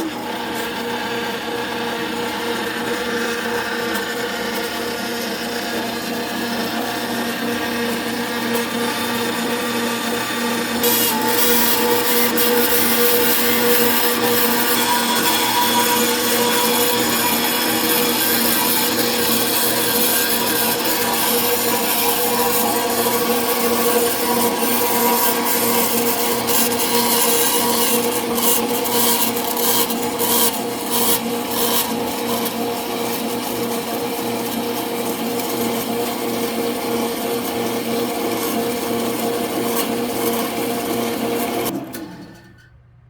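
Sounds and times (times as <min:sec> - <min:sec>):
band saw motor hum: 0:00.0 - 0:42.4
saw blade rasping: 0:01.7 - 0:34.5.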